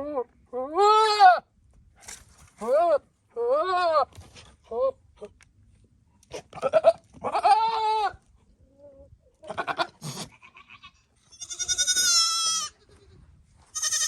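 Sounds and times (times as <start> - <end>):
goats bleating: 9.5 - 14.0.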